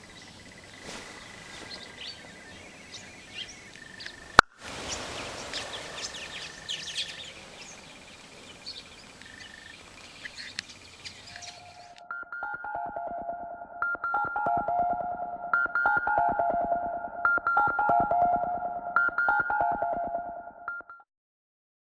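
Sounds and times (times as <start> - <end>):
small birds chirping and twittering: 0.0 - 12.0.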